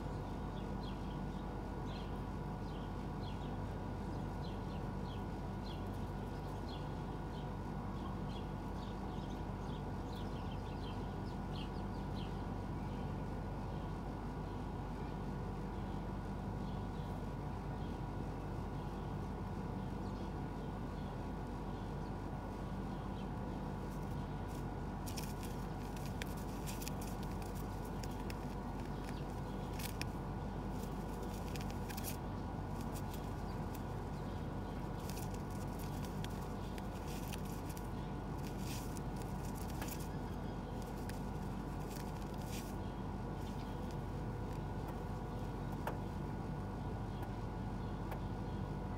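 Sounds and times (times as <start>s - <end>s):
low background hum: 0.0s - 48.9s
pigeons scratching and clicking: 22.6s - 47.3s.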